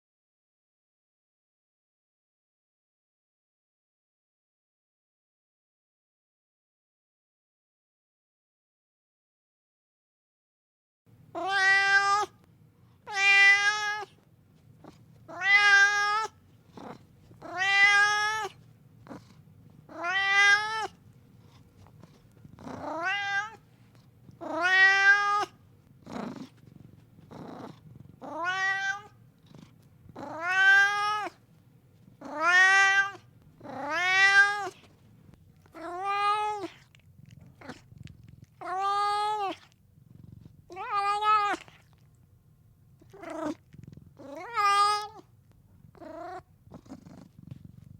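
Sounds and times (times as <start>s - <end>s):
cat meowing: 11.4s - 12.4s, 13.0s - 14.2s, 15.3s - 18.6s, 19.9s - 21.0s, 22.6s - 23.6s, 24.4s - 25.6s, 27.3s - 29.2s, 30.2s - 31.4s, 32.2s - 34.9s, 35.8s - 36.9s, 38.4s - 39.7s, 40.7s - 41.9s, 44.2s - 45.3s.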